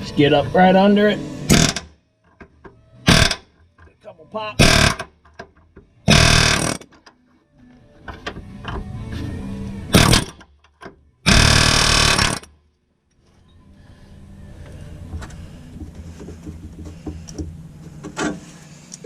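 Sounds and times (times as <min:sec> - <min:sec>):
air hammer buzzing: 0:01.4 - 0:02.0, 0:03.0 - 0:03.5, 0:04.6 - 0:05.1, 0:06.1 - 0:06.9, 0:09.9 - 0:10.4, 0:11.3 - 0:12.5
low steady hum: 0:13.2 - 0:19.0.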